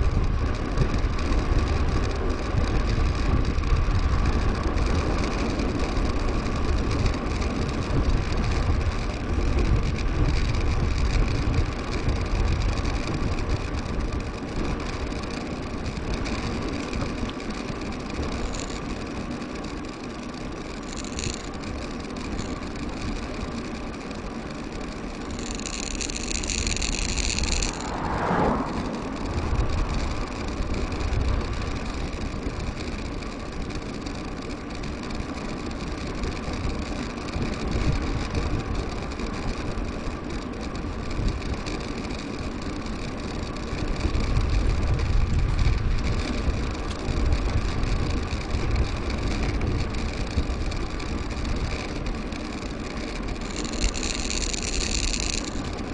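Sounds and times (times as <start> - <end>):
bike tyres rolling: 0.0 - 55.9
wind buffeting: 25.4 - 32.8.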